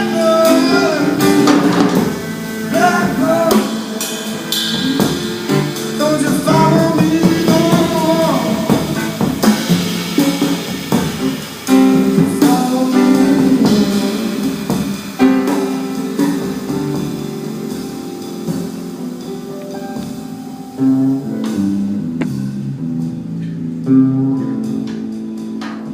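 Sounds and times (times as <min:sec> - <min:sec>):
live band guitar and drums: 0:00.0 - 0:25.9.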